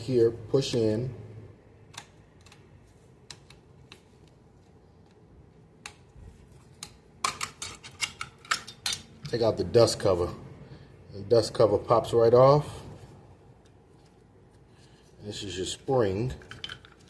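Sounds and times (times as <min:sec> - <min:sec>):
metal clicks of pistol parts: 0:06.8 - 0:09.4
metal parts rattling: 0:07.2 - 0:09.2, 0:16.3 - 0:17.0.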